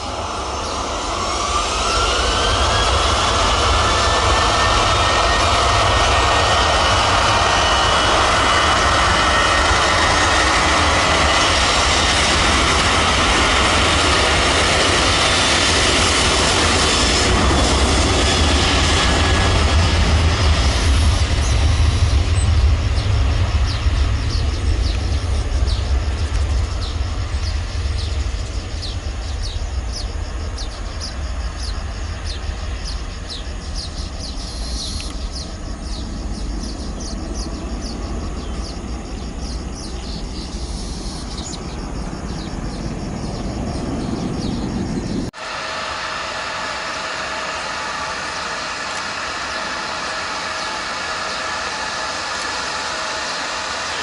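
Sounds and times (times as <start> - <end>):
jet airliner roar: 0.0 - 54.0
birds chirping: 20.4 - 45.3.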